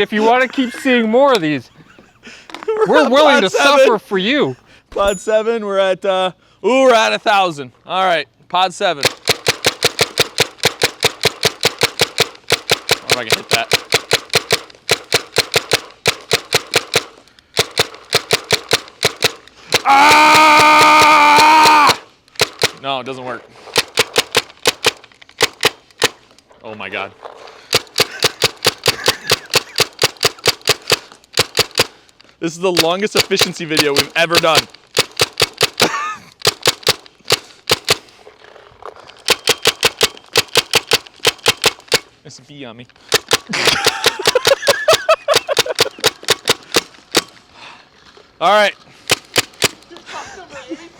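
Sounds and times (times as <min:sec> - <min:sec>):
paintball marker firing rapid shots: 0:09.0 - 0:22.9, 0:23.7 - 0:26.3, 0:27.7 - 0:38.2, 0:39.2 - 0:42.2, 0:43.0 - 0:47.4, 0:49.0 - 0:49.9.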